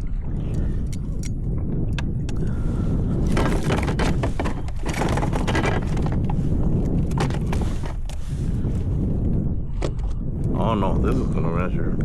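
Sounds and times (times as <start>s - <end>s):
wind rumble on microphone: 0.0s - 12.0s
knocks clicks and rustles: 3.2s - 6.4s, 7.0s - 8.2s.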